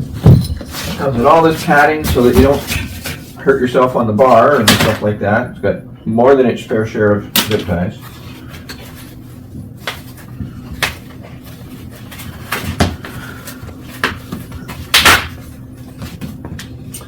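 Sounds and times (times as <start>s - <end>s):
packing material handling knocks: 0.0s - 3.2s
rustling scrape: 0.0s - 3.5s, 8.0s - 14.5s.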